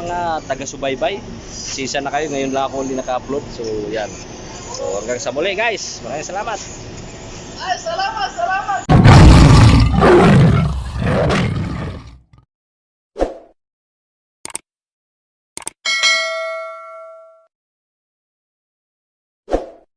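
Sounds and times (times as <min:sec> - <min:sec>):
bell-like ding: 0:15.9 - 0:17.5.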